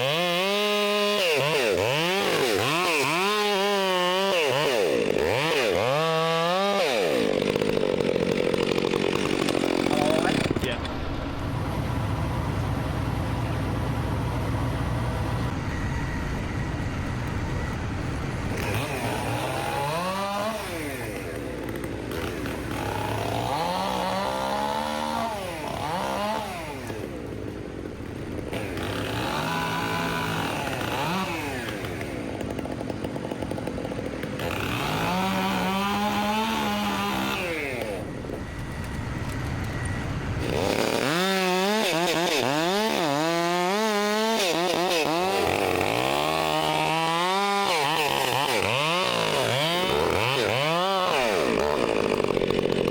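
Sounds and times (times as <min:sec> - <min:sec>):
chainsaw revving and cutting: 0:00.0 - 0:11.6, 0:17.2 - 0:52.9
low engine hum: 0:10.7 - 0:18.7, 0:38.0 - 0:40.6.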